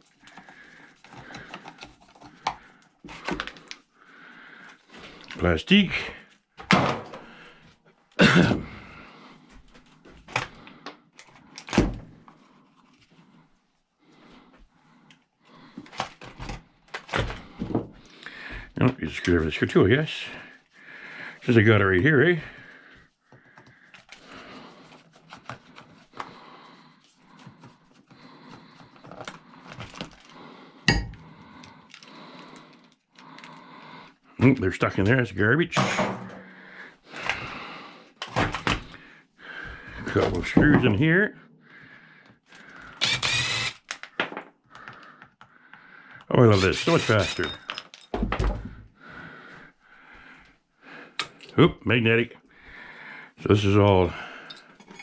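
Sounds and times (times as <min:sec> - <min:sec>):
tools clicking and scraping: 0:00.0 - 0:03.8, 0:42.5 - 0:44.2, 0:46.5 - 0:48.1, 0:51.2 - 0:51.6, 0:54.4 - 0:55.0
metal parts thunking onto piles: 0:35.8 - 0:36.4.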